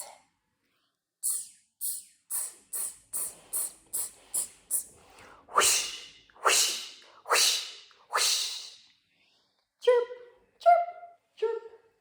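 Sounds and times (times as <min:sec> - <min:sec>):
person making hissing mouth sounds: 0:00.0 - 0:00.2, 0:01.2 - 0:08.9.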